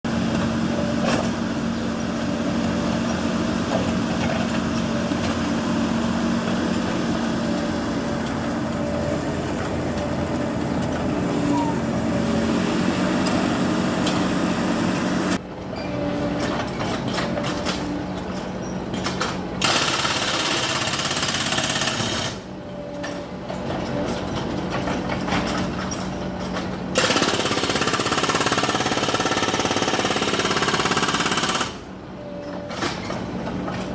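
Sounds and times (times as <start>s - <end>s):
jackhammer hammering concrete: 19.6s - 22.4s, 27.0s - 31.8s.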